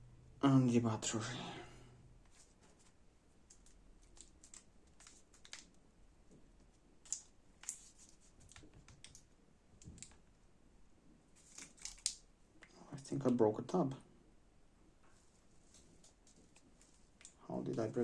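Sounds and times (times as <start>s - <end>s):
laptop parts clicking: 3.4s - 5.8s, 7.0s - 10.2s, 11.4s - 12.7s.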